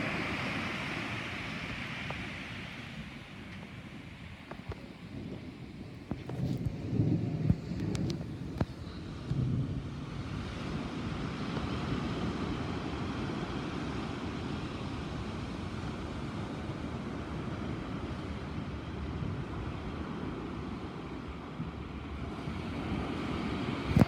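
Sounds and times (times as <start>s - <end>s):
low thunder rumble: 4.9s - 11.4s.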